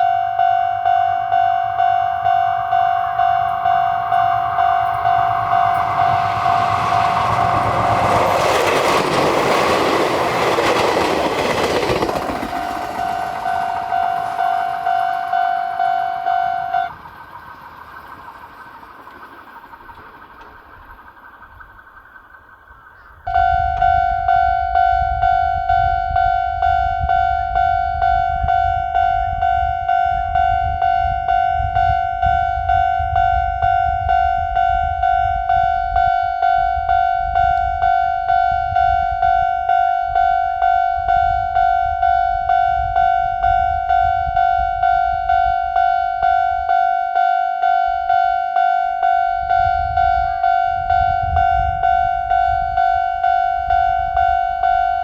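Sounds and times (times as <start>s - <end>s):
low rumble: 0.0s - 27.1s
level crossing warning bell: 0.0s - 55.0s.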